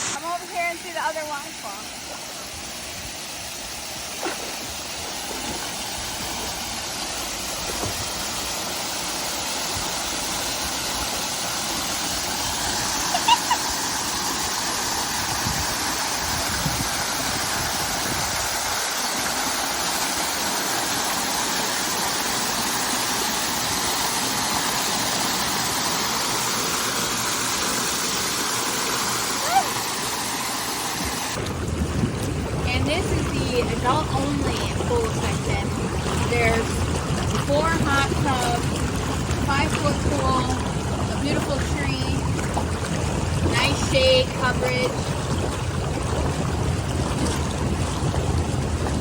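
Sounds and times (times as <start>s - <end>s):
waterfall rushing: 0.0s - 31.6s.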